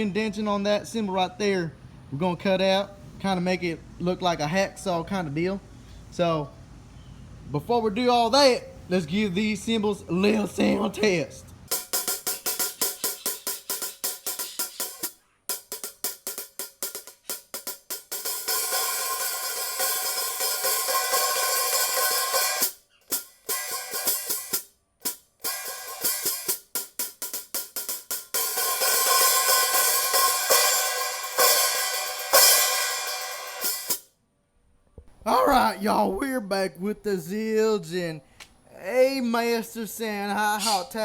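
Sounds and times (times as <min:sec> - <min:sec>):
hi-hat washy sizzle: 0:11.7 - 0:15.1
hi-hat closed strokes: 0:11.7 - 0:16.0.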